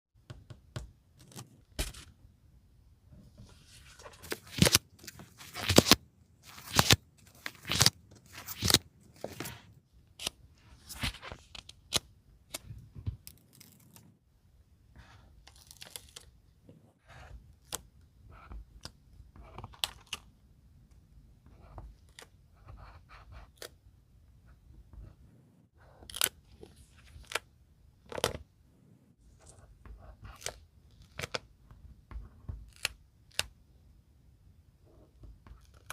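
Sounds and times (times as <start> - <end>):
paper rustling: 3.4 - 12.0.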